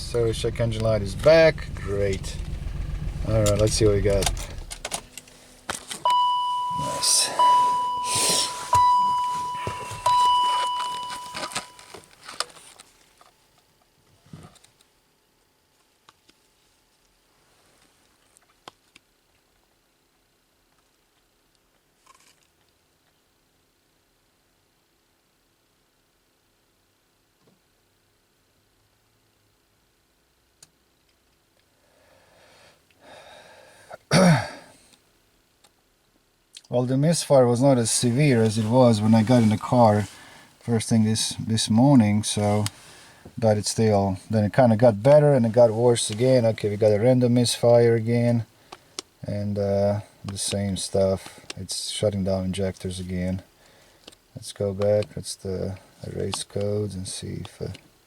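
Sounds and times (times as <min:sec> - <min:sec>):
car warning chime: 0:06.0 - 0:11.9
man sighing loudly: 0:08.0 - 0:08.7, 0:33.0 - 0:34.8
man breathing in: 0:31.8 - 0:33.9, 0:40.2 - 0:40.6, 0:42.8 - 0:43.4, 0:53.6 - 0:54.1.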